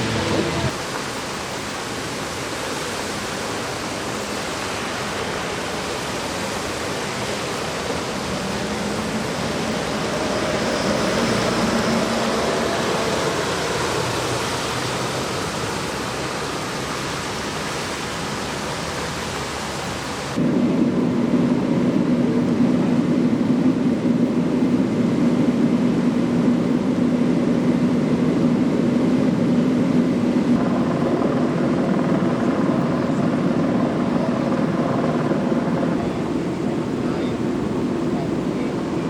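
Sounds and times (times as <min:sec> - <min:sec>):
faint engine hum: 0:00.0 - 0:00.8
floodwater rushing: 0:00.0 - 0:20.4.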